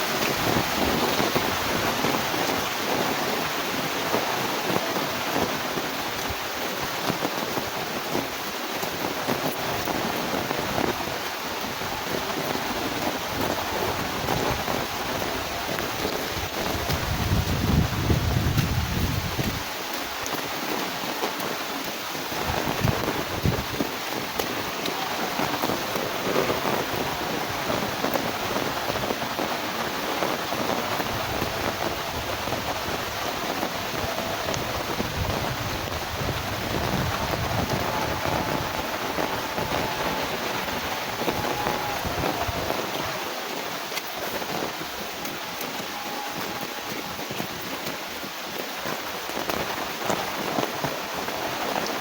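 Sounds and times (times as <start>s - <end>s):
heavy rain falling: 0.0s - 52.0s
low gusts of wind: 0.0s - 52.0s.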